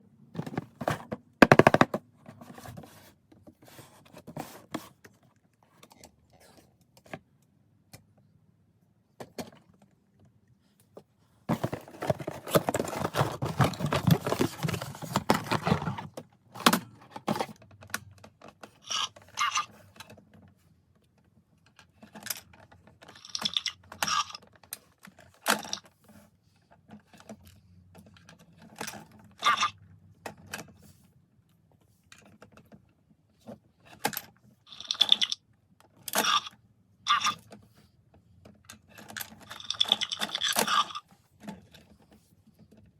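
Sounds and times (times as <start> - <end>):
packaging clicks and taps: 0.4 - 2.0, 11.5 - 18.1
packaging rustling: 11.5 - 16.2.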